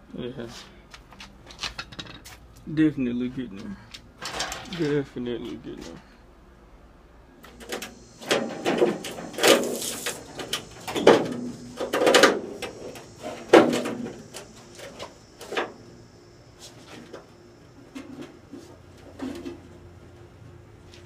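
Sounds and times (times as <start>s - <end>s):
sheet metal clattering and scraping: 4.2s - 5.0s, 7.6s - 15.8s.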